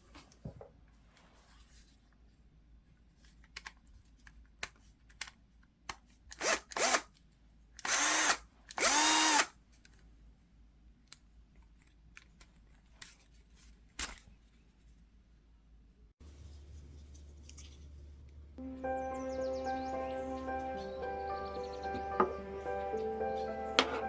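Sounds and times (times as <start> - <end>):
cordless drill motor spinning: 6.4 - 7.0, 7.8 - 9.5.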